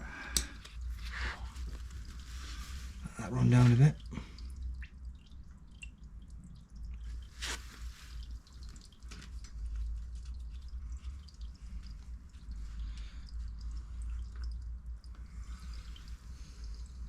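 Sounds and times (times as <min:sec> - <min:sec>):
low steady rumble: 0:00.0 - 0:17.0
oil dripping into a pan: 0:04.0 - 0:17.0.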